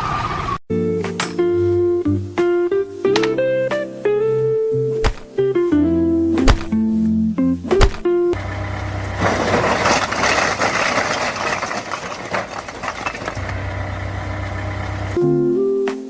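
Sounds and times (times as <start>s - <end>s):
motor humming with rattling: 8.4s - 15.2s.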